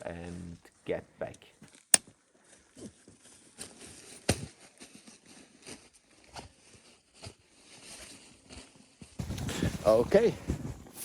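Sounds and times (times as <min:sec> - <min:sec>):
footsteps in snow: 0:02.8 - 0:11.0.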